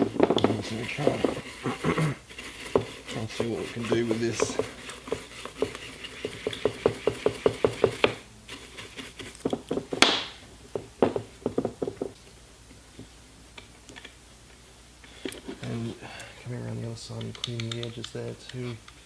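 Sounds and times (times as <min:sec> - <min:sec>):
bristle brush scrubbing: 0:00.0 - 0:09.9.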